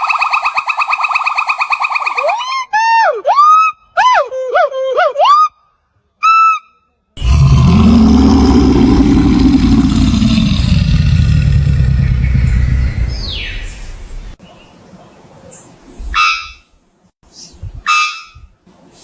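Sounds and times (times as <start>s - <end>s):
animal's low rumbling call: 7.2s - 14.4s.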